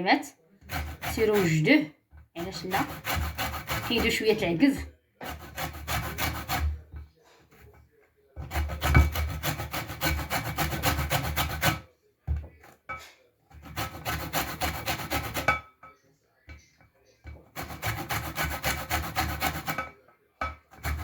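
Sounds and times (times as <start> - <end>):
peel rasping on hand grater: 0.6 - 1.7, 2.4 - 6.9, 8.4 - 11.8, 13.5 - 15.6, 17.4 - 19.9, 20.7 - 21.0.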